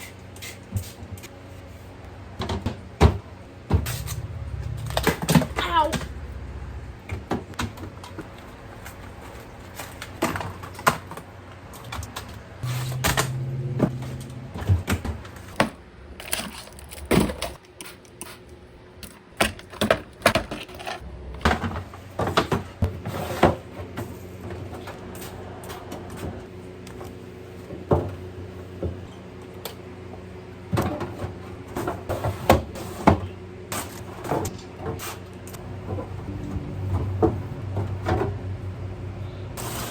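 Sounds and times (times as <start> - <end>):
containers and shelves clattering: 2.4 - 17.6, 19.4 - 26.4, 30.7 - 39.0.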